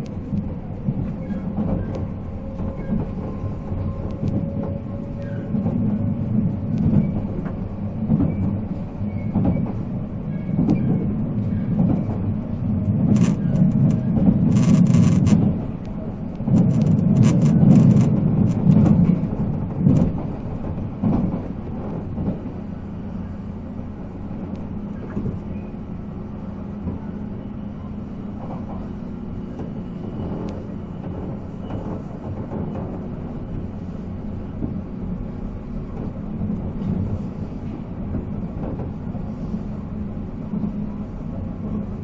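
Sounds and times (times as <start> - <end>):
train wheels rumbling: 0.0 - 42.0
clicks and clatter from rails: 13.1 - 15.6, 16.4 - 19.1.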